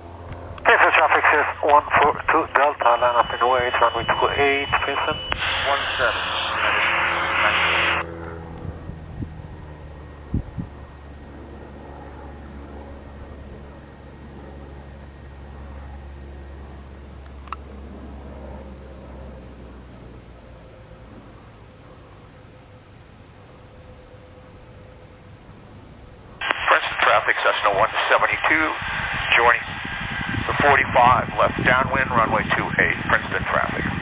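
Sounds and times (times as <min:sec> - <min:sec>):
high insect chorus: 0:06.8 - 0:26.5
low rumble: 0:27.3 - 0:33.0.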